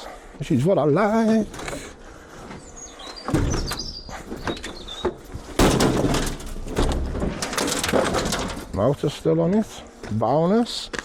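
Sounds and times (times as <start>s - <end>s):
small birds chirping: 0.0s - 5.6s
scrap metal knocking and scraping: 3.3s - 9.2s
loud metal clatter: 5.2s - 9.0s.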